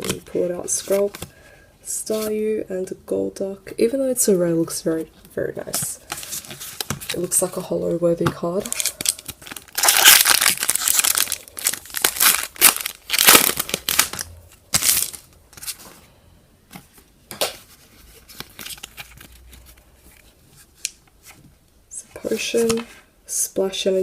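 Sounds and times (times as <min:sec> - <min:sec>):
foil wrapper crinkling and tearing: 0:08.6 - 0:15.8.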